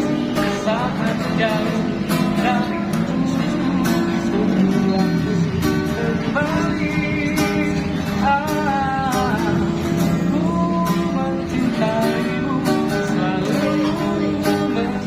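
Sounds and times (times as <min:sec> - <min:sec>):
acoustic guitar strumming: 0:00.0 - 0:15.0
man singing: 0:00.0 - 0:15.0.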